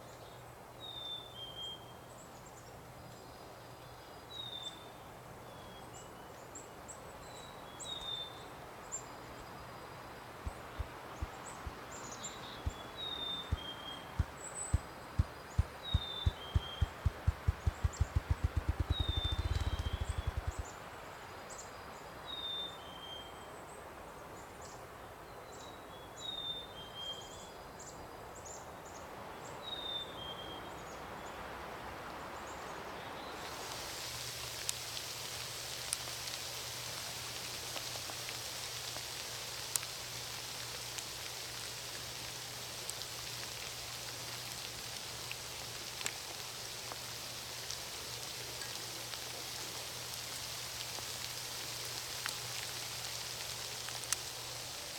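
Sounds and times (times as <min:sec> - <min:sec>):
small birds chirping: 0:00.0 - 0:22.6
hiss of water: 0:08.8 - 0:22.4, 0:31.8 - 0:54.9
patter of falling water drops: 0:08.9 - 0:21.4, 0:33.2 - 0:54.9
low steady hum: 0:10.3 - 0:20.7
single water drips: 0:10.4 - 0:20.6.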